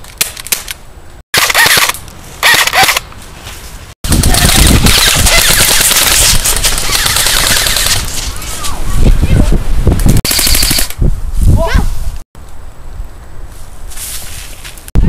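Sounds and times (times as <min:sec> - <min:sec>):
wind rumble on microphone: 0:04.0 - 0:13.9
airsoft guns firing full-auto: 0:04.2 - 0:08.0, 0:10.3 - 0:10.9.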